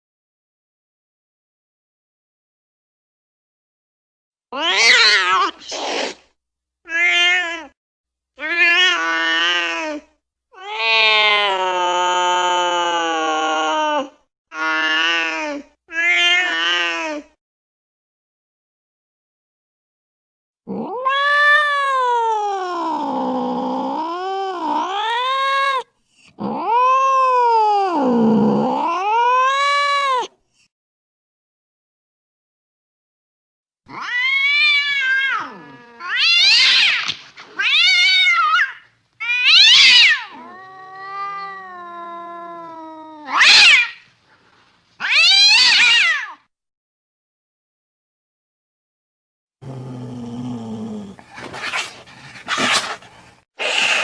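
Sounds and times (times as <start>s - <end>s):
cat yowling: 4.6s - 5.7s, 6.9s - 7.8s, 20.7s - 30.3s, 33.9s - 44.0s, 45.0s - 46.5s
cat hissing: 4.7s - 6.4s, 50.5s - 54.0s.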